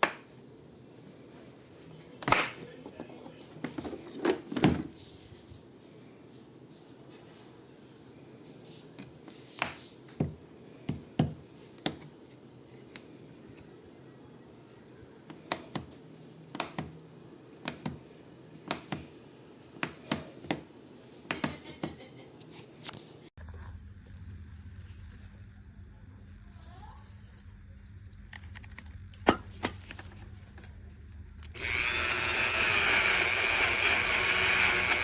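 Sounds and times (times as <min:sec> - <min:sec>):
clicks and knocks of hard objects: 0:02.2 - 0:04.9.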